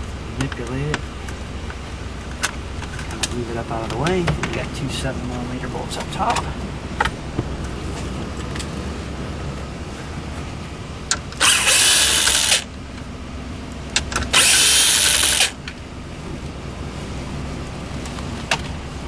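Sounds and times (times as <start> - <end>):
power drill spinning out bolts: 11.4 - 12.7, 14.3 - 15.6.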